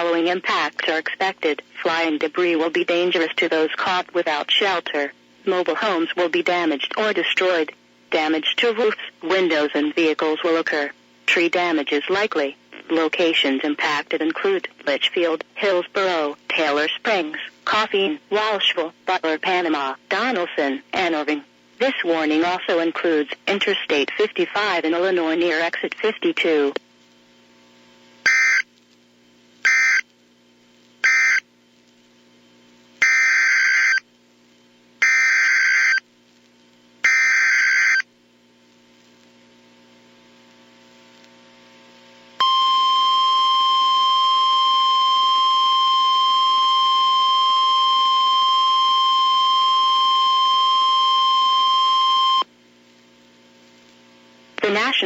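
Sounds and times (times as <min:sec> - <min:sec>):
raspy digital data bursts: 0:28.3 - 0:28.7, 0:29.6 - 0:30.0, 0:31.0 - 0:31.4, 0:33.0 - 0:34.0, 0:35.0 - 0:36.0, 0:37.0 - 0:38.0
steady alarm tone: 0:28.3 - 0:28.7, 0:29.6 - 0:30.0, 0:31.0 - 0:31.5, 0:33.0 - 0:34.0, 0:35.0 - 0:36.0, 0:37.0 - 0:38.0, 0:42.4 - 0:52.4.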